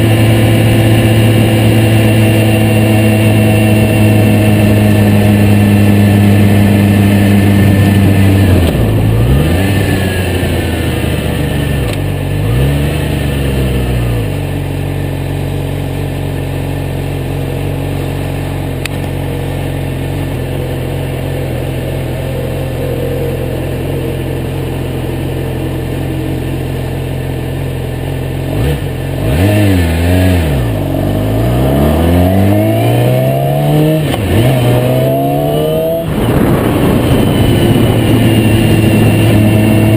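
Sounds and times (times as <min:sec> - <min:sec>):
motorcycle engine running: 0:00.0 - 0:39.9
wind noise on microphone: 0:35.5 - 0:39.9.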